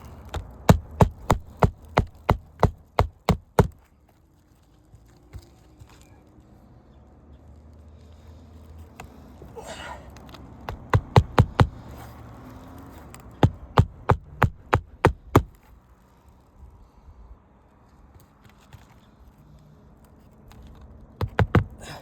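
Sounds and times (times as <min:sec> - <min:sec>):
hammer striking roof: 0:00.2 - 0:03.8, 0:10.7 - 0:11.9, 0:13.4 - 0:15.6, 0:21.2 - 0:22.0.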